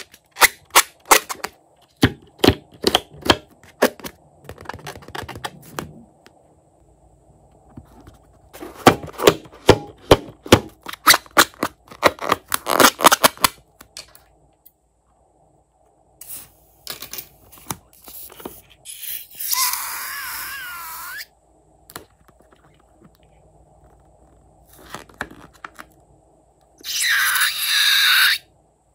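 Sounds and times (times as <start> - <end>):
balloon air squealing: 18.8 - 21.3, 26.8 - 28.5.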